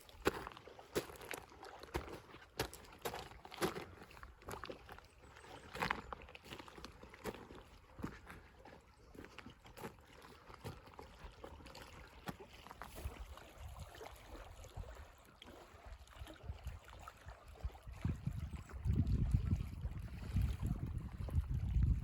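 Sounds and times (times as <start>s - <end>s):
wind on microphone: 17.6s - 22.0s.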